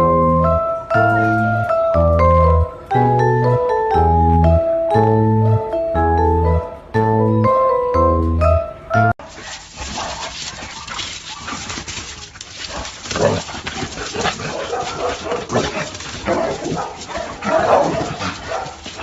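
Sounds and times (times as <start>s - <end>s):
dog barking and whining: 14.3s - 19.0s.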